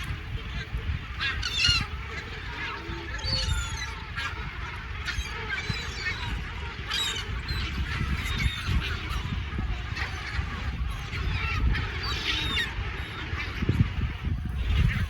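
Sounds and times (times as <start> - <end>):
gulls calling: 0.0 - 15.0.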